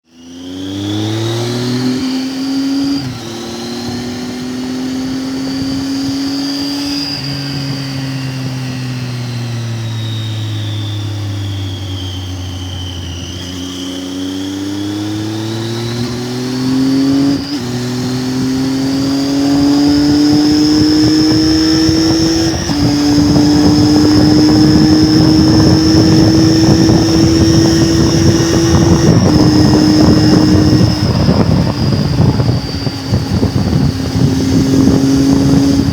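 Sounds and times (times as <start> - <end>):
motorcycle engine running: 0.0 - 35.9
wind noise: 0.6 - 9.8, 12.3 - 35.9.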